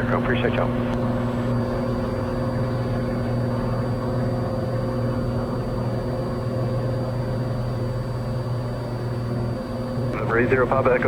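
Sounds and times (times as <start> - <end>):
aircraft engine and propeller droning: 0.0 - 11.0.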